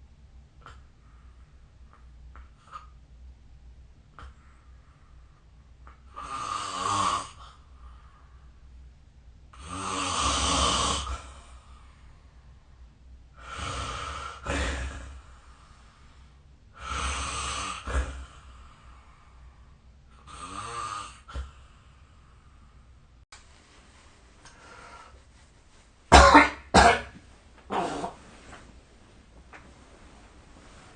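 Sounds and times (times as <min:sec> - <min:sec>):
quiet breathing: 0:00.6 - 0:03.0, 0:04.1 - 0:06.4, 0:07.2 - 0:10.0, 0:11.0 - 0:26.0
person snoring: 0:06.2 - 0:07.6, 0:09.6 - 0:11.4, 0:13.4 - 0:15.2, 0:20.2 - 0:21.5.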